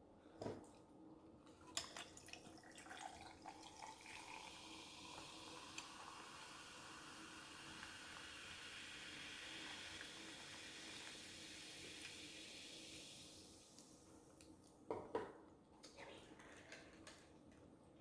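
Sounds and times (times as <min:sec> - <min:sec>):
fizzing hiss: 0:04.2 - 0:14.0.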